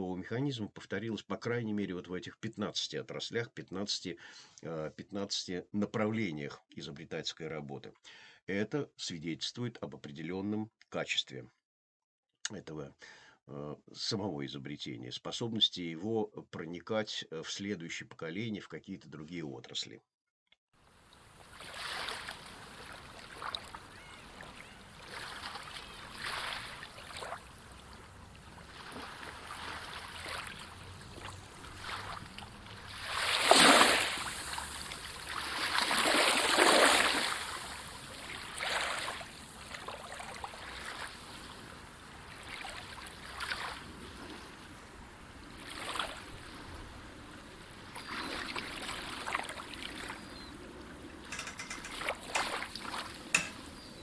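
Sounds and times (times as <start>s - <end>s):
water washing and splashing: 21.0s - 44.6s, 45.4s - 46.9s, 47.9s - 54.0s.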